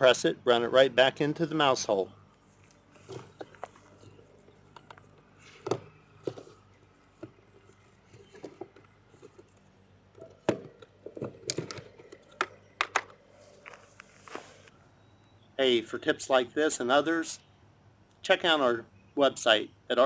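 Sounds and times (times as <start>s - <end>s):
power cord knocks and clicks: 10.4s - 13.1s.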